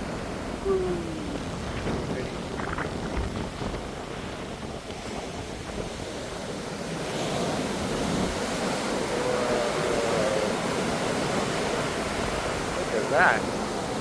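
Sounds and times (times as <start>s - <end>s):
ocean surf washing in: 0.0s - 14.0s
wind buffeting microphone: 0.0s - 14.0s.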